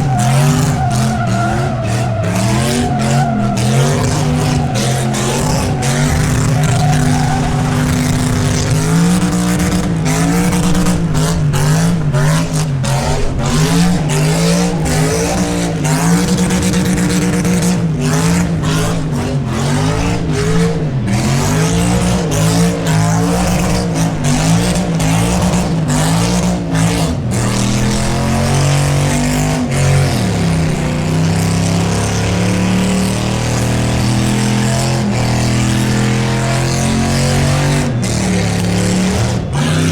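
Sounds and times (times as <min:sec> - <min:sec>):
tyres screeching: 0:00.0 - 0:21.3
car engine revving: 0:00.0 - 0:39.9.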